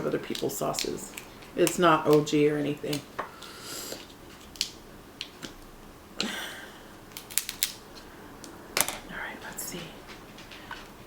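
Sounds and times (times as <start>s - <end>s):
crab shells cracking and crunching: 0.0s - 6.4s, 7.0s - 9.0s.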